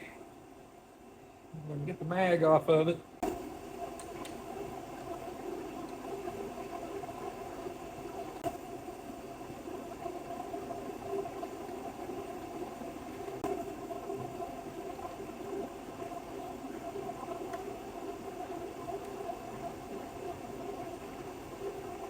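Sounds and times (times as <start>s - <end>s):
shop heater droning: 0.0s - 22.0s
faint clicks: 19.0s - 19.2s.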